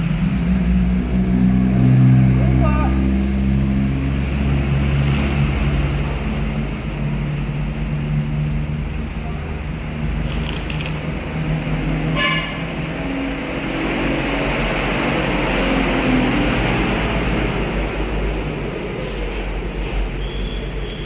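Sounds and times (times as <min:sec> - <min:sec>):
road traffic passing: 0:00.0 - 0:21.0
vehicle horn toot: 0:12.1 - 0:12.8.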